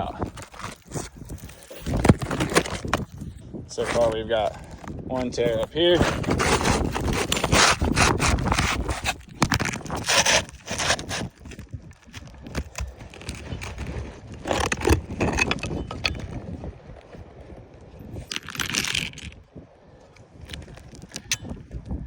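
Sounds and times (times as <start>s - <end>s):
roofing shingle scraping: 0.0s - 16.5s.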